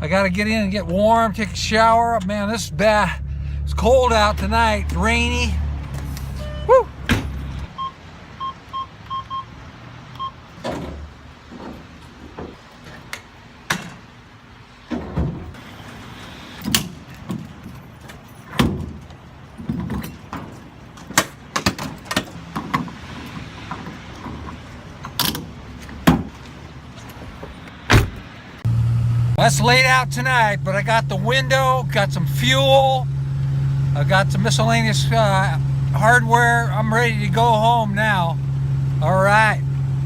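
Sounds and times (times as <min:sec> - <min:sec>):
knocks and clunks: 0:05.8 - 0:07.7, 0:10.5 - 0:14.1, 0:14.8 - 0:15.6, 0:16.6 - 0:28.4
vehicle warning chime beeps: 0:06.3 - 0:09.6, 0:10.2 - 0:10.5
car door thuds: 0:27.9 - 0:28.3.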